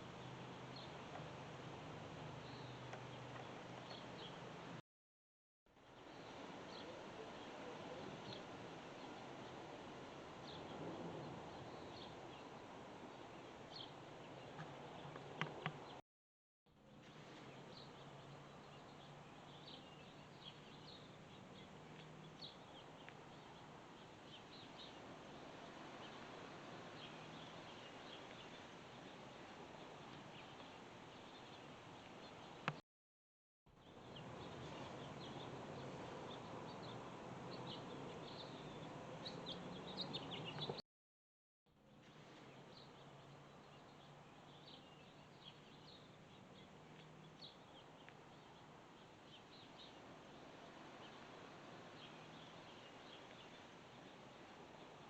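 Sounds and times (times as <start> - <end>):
small birds chirping: 0.0 - 1.3, 2.3 - 4.8, 5.8 - 16.0, 16.8 - 32.8, 33.7 - 40.8, 41.8 - 55.0
faint background hiss: 5.8 - 16.0, 41.8 - 55.0.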